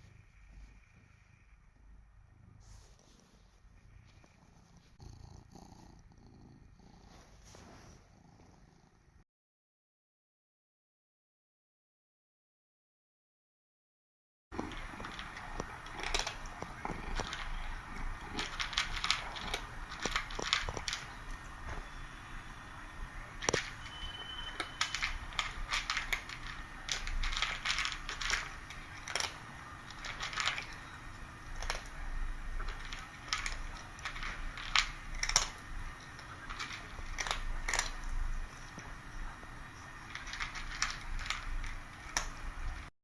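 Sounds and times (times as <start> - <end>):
pet licking and eating: 14.6 - 42.9.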